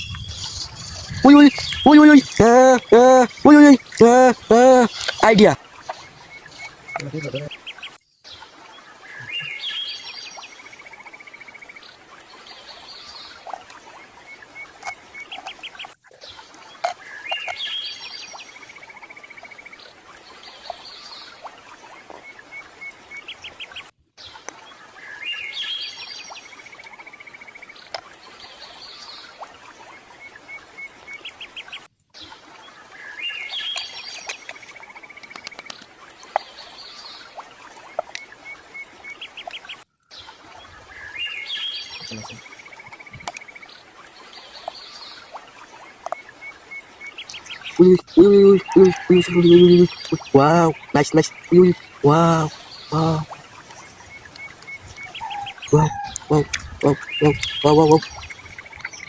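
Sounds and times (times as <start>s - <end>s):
birds chirping and trilling: 0.0s - 21.3s, 38.4s - 59.0s.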